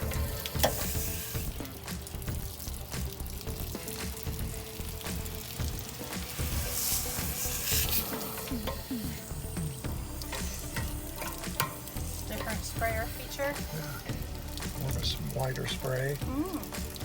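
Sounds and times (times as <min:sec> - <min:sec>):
water pouring out of a drain: 0:00.0 - 0:17.0
water spraying inside a tank: 0:00.0 - 0:17.0.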